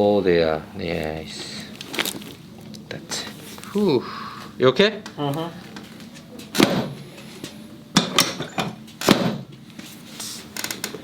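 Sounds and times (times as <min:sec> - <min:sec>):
knocks and rustles on treatment table: 0:05.8 - 0:09.6.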